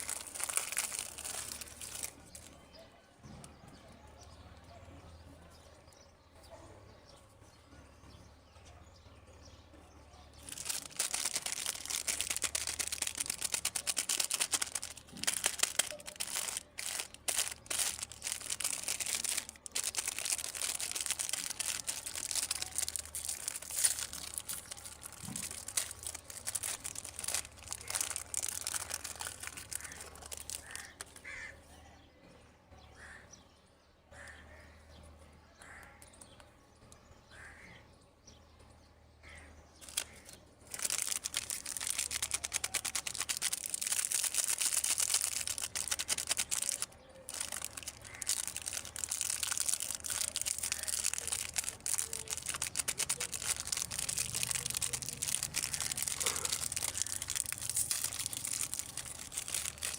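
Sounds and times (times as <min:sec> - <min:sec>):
plastic packaging crinkling: 0:00.0 - 0:02.8, 0:10.4 - 0:31.4, 0:39.8 - 0:59.9.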